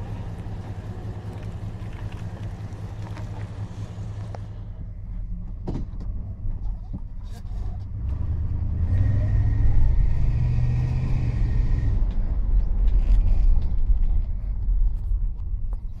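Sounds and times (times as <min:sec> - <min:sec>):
car engine rumble: 0:00.0 - 0:16.0.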